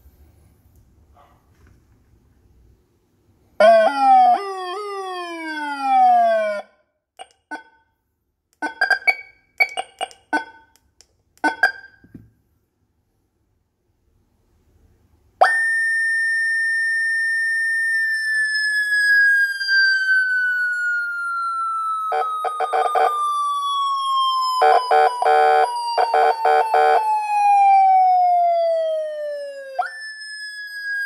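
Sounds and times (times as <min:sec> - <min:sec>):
choppy buzzy siren blasts: 0:03.6 - 0:06.7, 0:15.4 - 0:31.0
police siren wail: 0:03.6 - 0:06.8, 0:15.4 - 0:31.0.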